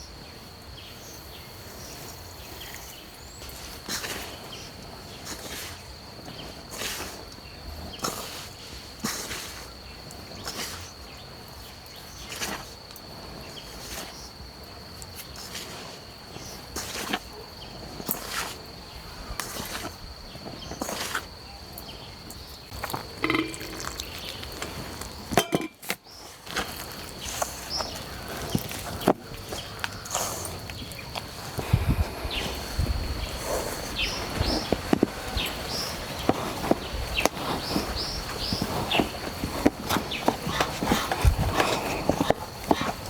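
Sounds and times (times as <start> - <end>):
high-pitched insect trill: 16.0 - 39.4.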